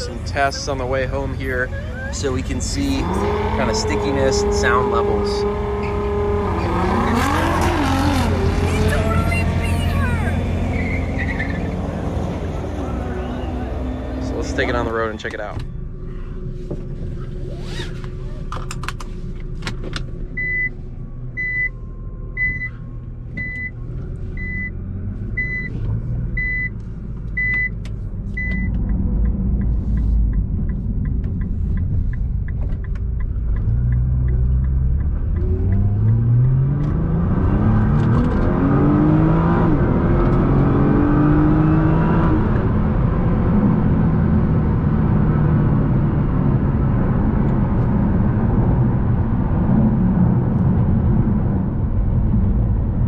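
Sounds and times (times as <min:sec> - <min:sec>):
car engine accelerating: 0:00.0 - 0:53.0
road and tyre noise: 0:00.0 - 0:53.0.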